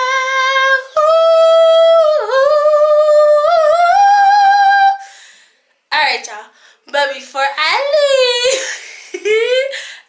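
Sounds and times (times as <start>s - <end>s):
woman singing unaccompanied: 0.0s - 5.0s.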